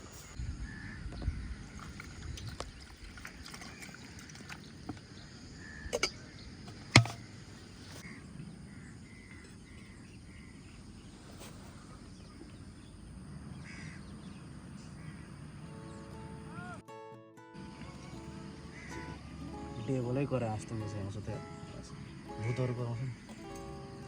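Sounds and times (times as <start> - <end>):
crows cawing: 8.0 - 10.6, 13.6 - 14.4, 18.6 - 19.2.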